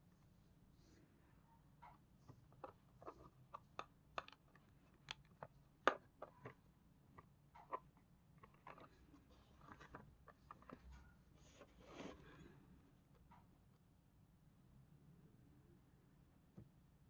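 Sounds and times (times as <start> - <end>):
handling clicks and taps: 2.5 - 9.0.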